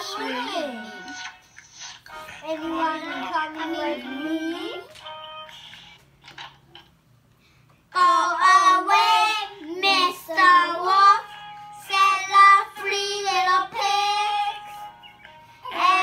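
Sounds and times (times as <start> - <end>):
young child singing: 0.0 - 1.1, 2.4 - 4.9, 7.9 - 14.7, 15.7 - 16.0.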